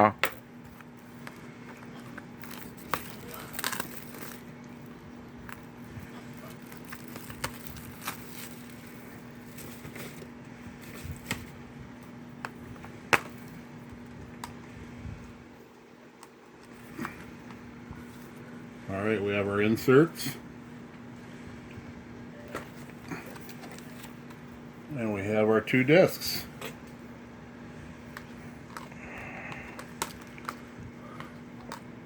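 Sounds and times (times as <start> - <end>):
plastic crinkling: 0.6 - 11.6.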